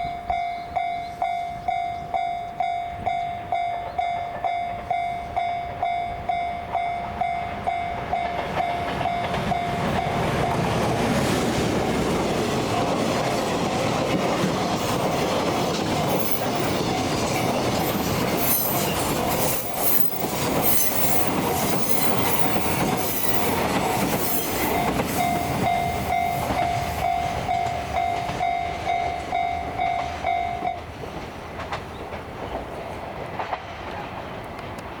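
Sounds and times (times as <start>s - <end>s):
level crossing warning bell: 0.0s - 11.0s, 14.8s - 30.9s
train rumbling: 0.0s - 35.0s
wheels clattering on rail joints: 3.5s - 35.0s.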